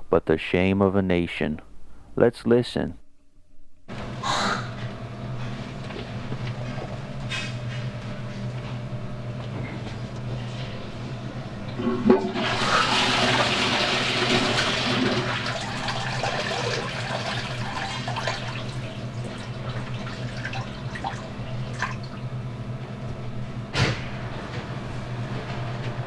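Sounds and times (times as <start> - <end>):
steady low hum: 0.0 - 26.0
toilet flushing: 11.7 - 23.5.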